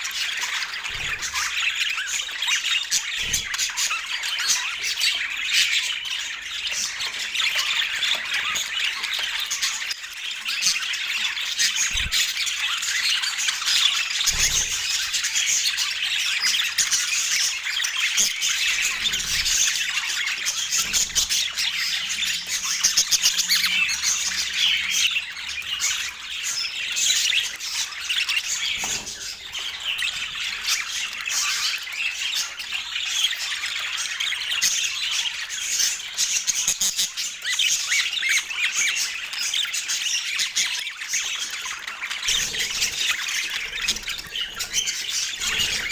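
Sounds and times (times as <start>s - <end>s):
budgerigars chattering and warbling: 0.0s - 45.9s.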